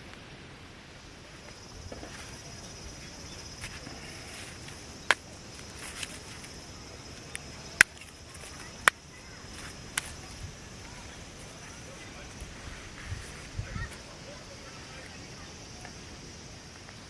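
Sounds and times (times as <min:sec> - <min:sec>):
high-pitched insect chorus: 0:00.9 - 0:17.0.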